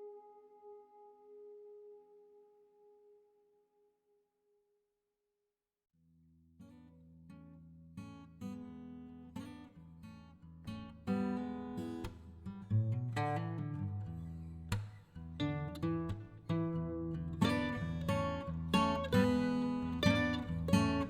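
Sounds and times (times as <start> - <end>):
acoustic guitar picking and strumming: 6.6 - 21.0.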